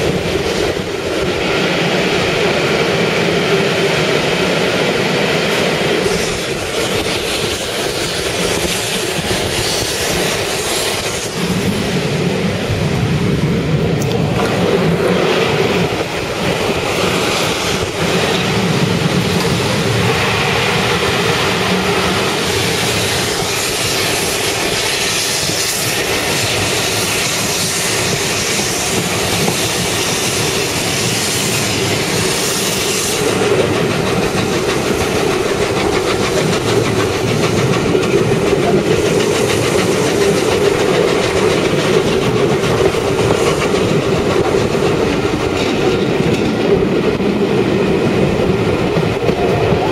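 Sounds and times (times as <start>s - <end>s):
train rolling along track: 0.0s - 49.9s.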